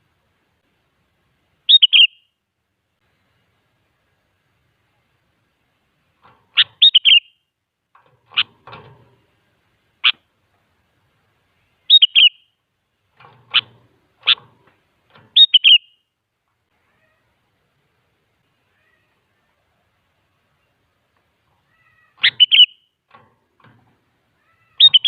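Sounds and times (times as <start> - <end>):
bird singing whistled notes: 1.7 - 2.4, 6.6 - 7.4, 11.8 - 12.6, 15.4 - 16.1, 22.2 - 22.9, 24.8 - 25.0.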